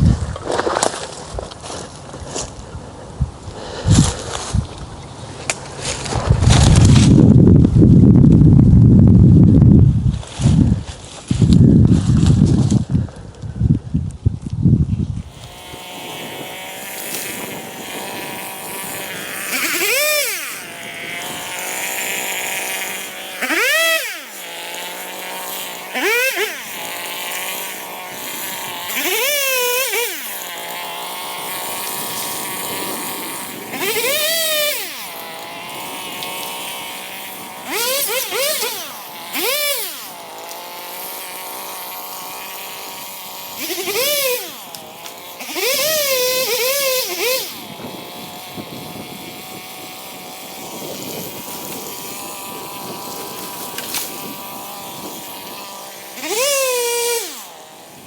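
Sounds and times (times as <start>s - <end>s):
chainsaw idling and revving: 15.2s - 58.0s.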